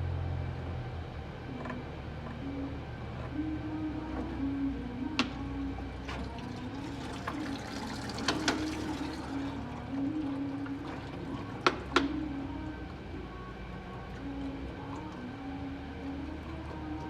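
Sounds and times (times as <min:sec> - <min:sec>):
steady hum: 0:00.0 - 0:17.0
oil draining into a pan: 0:06.2 - 0:12.2.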